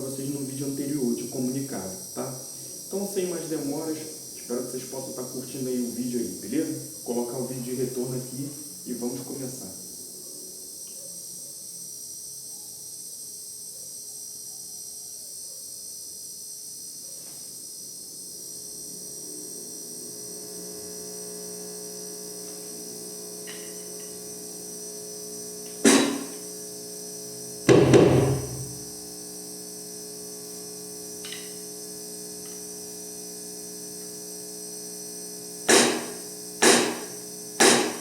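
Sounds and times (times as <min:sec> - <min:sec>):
cicada buzzing: 0:00.0 - 0:38.0
electrical hum from speaker: 0:00.0 - 0:38.0
electronic drum hit: 0:25.8 - 0:26.4, 0:27.7 - 0:28.8, 0:35.7 - 0:38.0.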